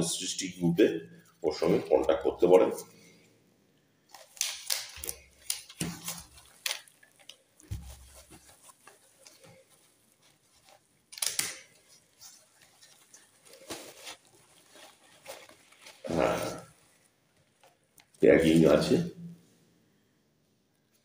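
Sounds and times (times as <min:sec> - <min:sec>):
packaging rustling: 0:04.1 - 0:18.2.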